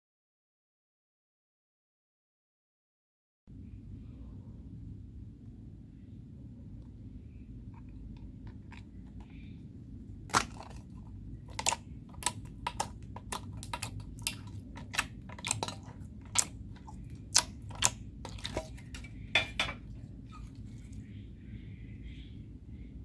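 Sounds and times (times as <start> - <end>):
slime popping and crackling: 10.3 - 10.8, 11.5 - 19.0.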